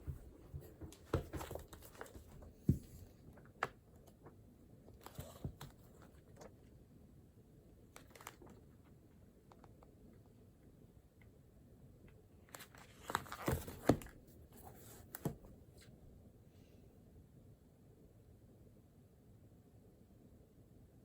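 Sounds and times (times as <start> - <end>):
paper rustling: 0.0 - 6.6, 8.0 - 8.6, 12.5 - 15.9.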